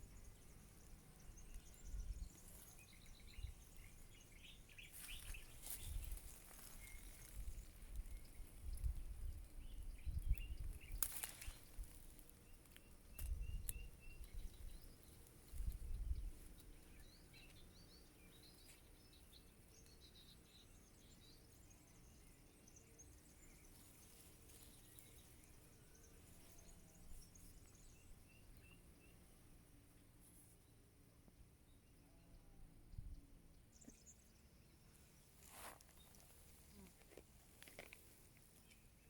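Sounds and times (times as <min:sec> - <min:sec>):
small birds chirping: 0:00.0 - 0:30.9, 0:31.5 - 0:39.0
wind buffeting microphone: 0:07.4 - 0:11.0.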